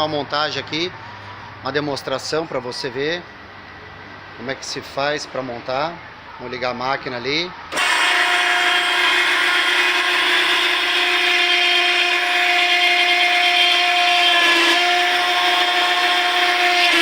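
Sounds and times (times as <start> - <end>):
hydraulic machine whining: 7.7 - 17.0.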